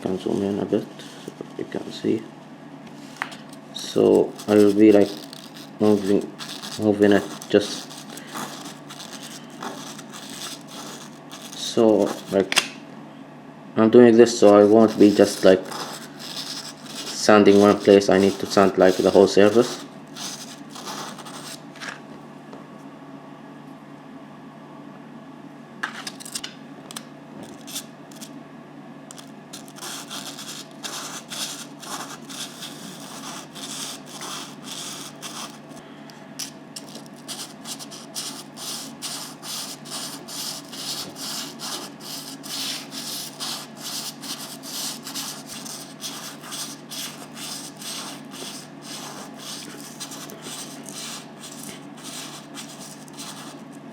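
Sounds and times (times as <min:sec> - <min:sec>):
stone rubbed on sandpaper: 0:04.0 - 0:12.4, 0:14.3 - 0:21.6, 0:29.1 - 0:35.8, 0:36.8 - 0:53.6.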